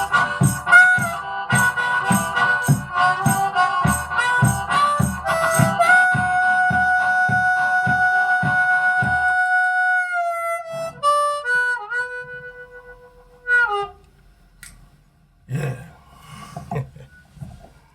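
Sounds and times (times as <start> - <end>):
rhythmic knocking: 0.0 - 9.6
harmonica playing: 0.0 - 14.1.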